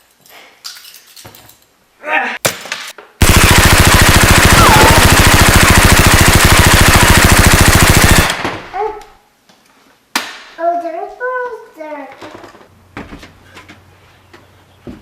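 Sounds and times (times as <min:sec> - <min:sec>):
automatic machine-gun fire: 0:03.2 - 0:08.8.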